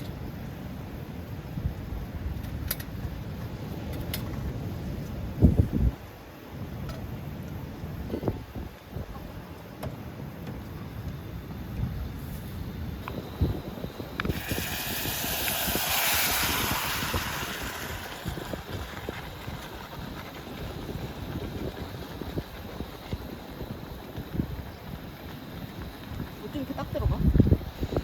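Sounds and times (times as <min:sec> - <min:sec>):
wind buffeting microphone: 0:00.0 - 0:28.0
rushing hiss: 0:12.2 - 0:26.6.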